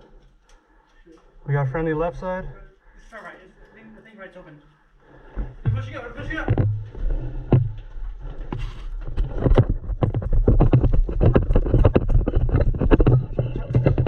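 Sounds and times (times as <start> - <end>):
quick footsteps: 5.2 - 14.0
gear rattling: 5.7 - 14.0.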